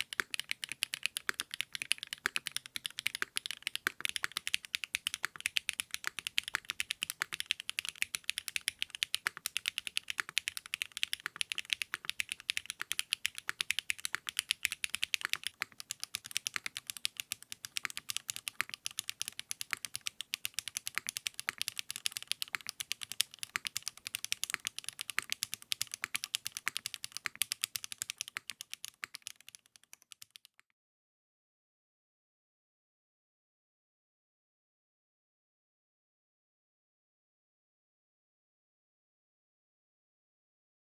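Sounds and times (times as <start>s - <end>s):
mechanical keyboard typing: 0.0s - 30.6s.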